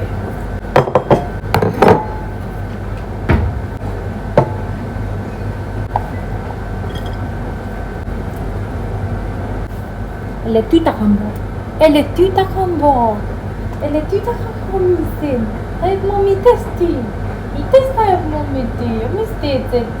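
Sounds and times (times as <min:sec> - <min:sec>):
clothes dryer humming: 0:00.0 - 0:20.0
dishes and utensils clattering: 0:06.0 - 0:07.4.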